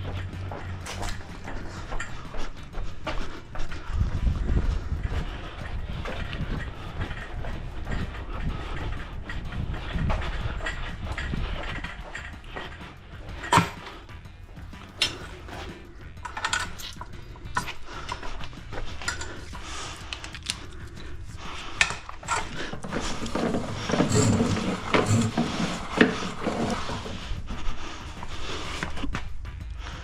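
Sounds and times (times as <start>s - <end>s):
hard objects knocking and clattering: 4.9s - 21.0s, 21.6s - 27.2s.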